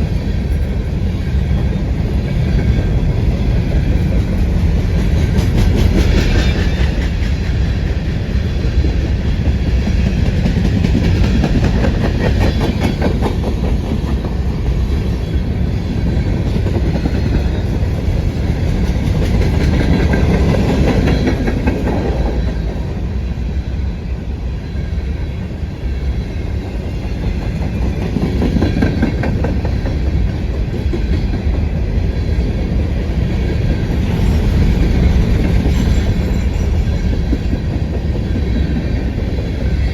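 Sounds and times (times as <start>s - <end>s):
train rumbling past: 0.0s - 39.9s
wheels clacking over rail joints: 3.8s - 23.2s.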